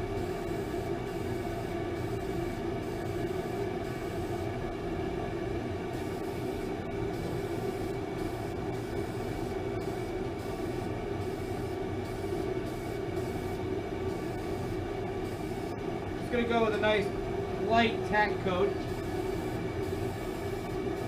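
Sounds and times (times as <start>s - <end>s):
motor humming: 0.0s - 21.0s.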